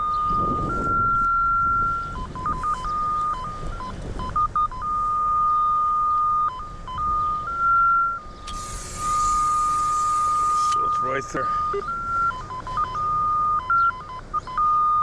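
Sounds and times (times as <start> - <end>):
electronic tone changing pitch: 0.0 - 15.0.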